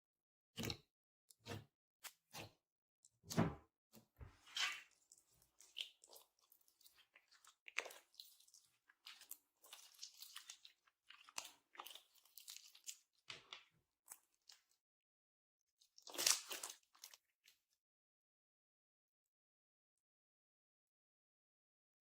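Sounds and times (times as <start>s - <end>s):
slime squishing by hand: 4.4s - 13.0s, 16.0s - 17.2s.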